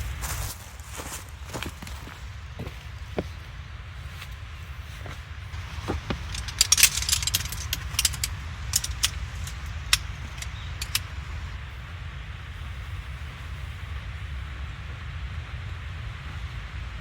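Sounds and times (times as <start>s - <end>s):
steady background noise: 0.0s - 17.0s
light metallic clicks and clinks: 5.0s - 11.5s.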